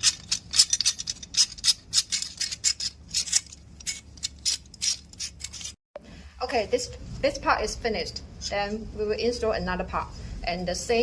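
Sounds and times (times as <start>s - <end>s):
hand tool clicking on screws: 0.0s - 5.7s.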